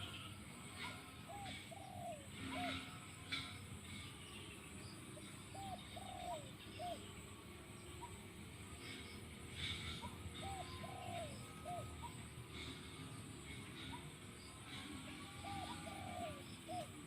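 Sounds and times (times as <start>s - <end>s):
dove cooing: 0.7s - 3.6s, 5.2s - 7.1s, 9.6s - 13.0s, 13.7s - 17.0s.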